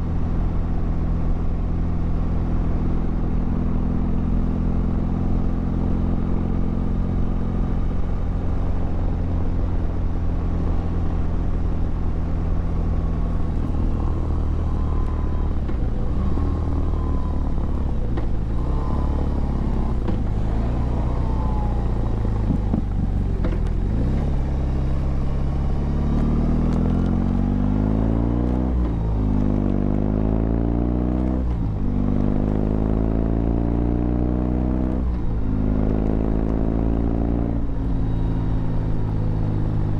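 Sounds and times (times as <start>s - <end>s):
motorcycle engine: 7.2s - 39.9s
gear change: 12.1s - 30.1s.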